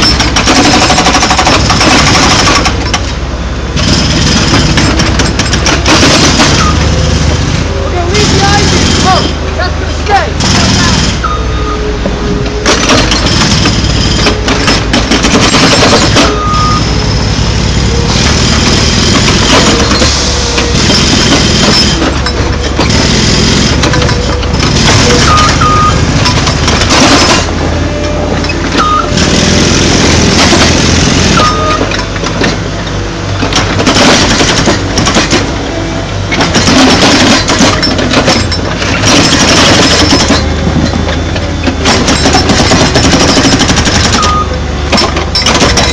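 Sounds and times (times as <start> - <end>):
diesel engine running under load: 0.0 - 45.9.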